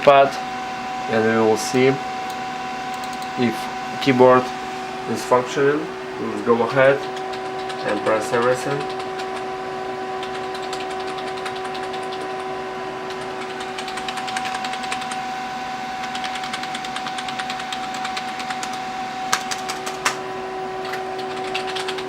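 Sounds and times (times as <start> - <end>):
loud keyboard clacks: 6.9 - 9.4, 10.2 - 12.4, 13.1 - 15.2, 16.1 - 20.2, 20.8 - 22.0
keyboard keys clicking: 10.2 - 12.4, 13.1 - 15.2, 16.1 - 20.2, 20.8 - 22.0.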